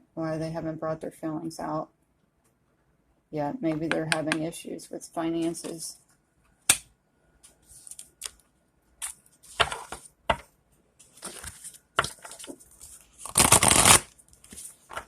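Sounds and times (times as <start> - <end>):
cards clicking and rustling: 11.0 - 15.0.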